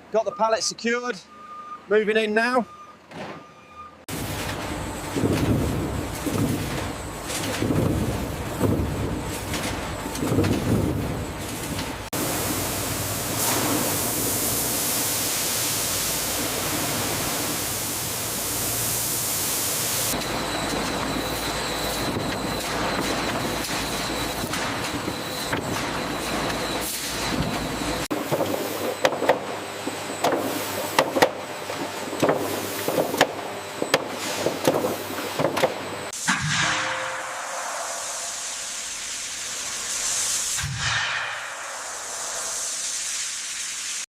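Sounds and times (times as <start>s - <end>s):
steady rushing hiss: 37.0s - 44.0s.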